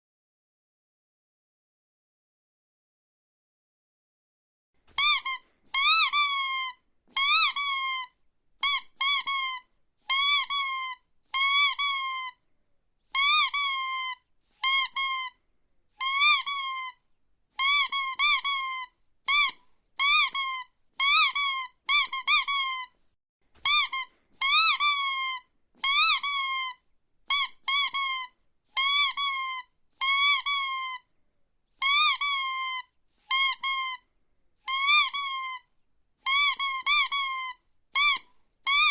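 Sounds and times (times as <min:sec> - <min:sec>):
rubber duck toy squeaking: 0:04.9 - 0:12.4, 0:13.1 - 0:15.4, 0:16.0 - 0:17.0, 0:17.6 - 0:23.0, 0:23.6 - 0:31.1, 0:31.8 - 0:38.9.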